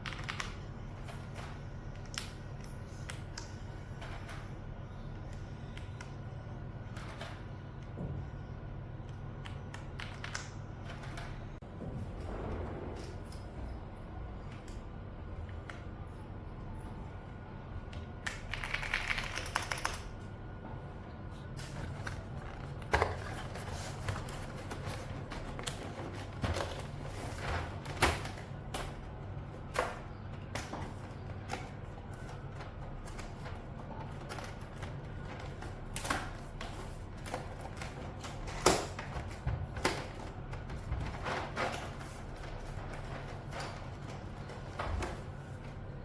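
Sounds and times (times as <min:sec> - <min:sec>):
mechanical keyboard typing: 0:18.3 - 0:20.1.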